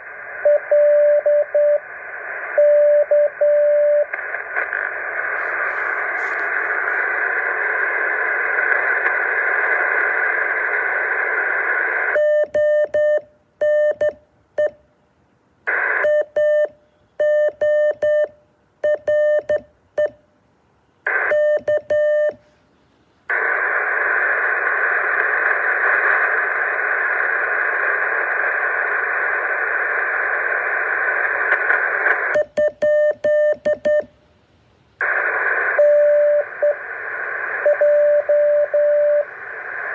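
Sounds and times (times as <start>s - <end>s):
radio static hiss: 1.7s - 2.6s, 4.0s - 12.2s, 15.7s - 16.1s, 21.1s - 32.6s, 35.0s - 39.9s
morse code tone: 32.4s - 34.1s.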